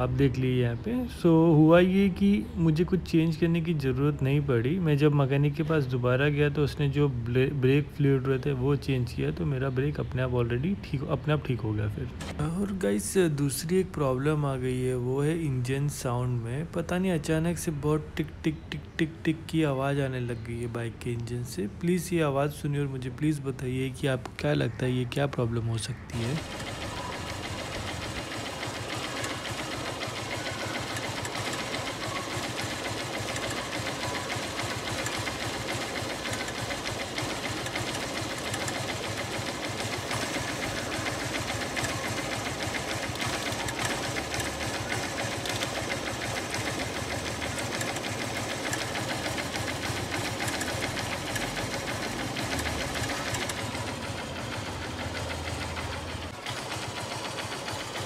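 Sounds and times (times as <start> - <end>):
motorcycle engine running: 26.2 - 58.0
rapid engine ticking: 26.2 - 58.0.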